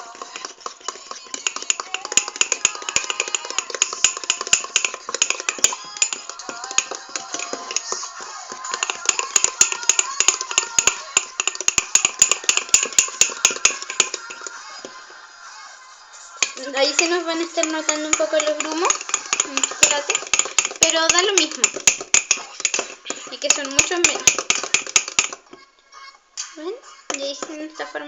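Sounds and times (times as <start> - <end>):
fork clicking in batter container: 0.0 - 14.6, 16.4 - 25.4
faint background music or voice: 0.0 - 24.4, 25.2 - 28.0.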